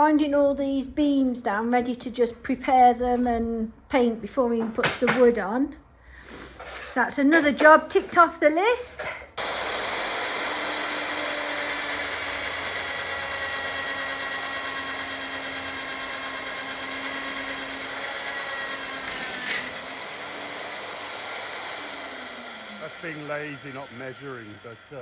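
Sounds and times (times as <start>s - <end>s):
magnetic drill boring steel: 9.4s - 25.0s.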